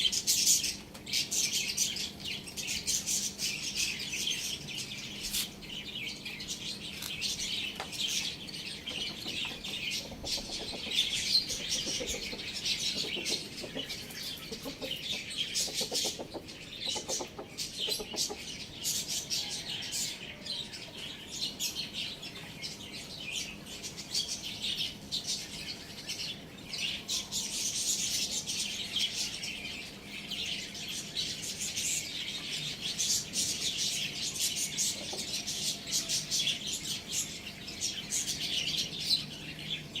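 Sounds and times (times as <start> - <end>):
small birds chirping: 0.0 - 40.0
chickens clucking: 7.7 - 20.4, 34.4 - 36.4.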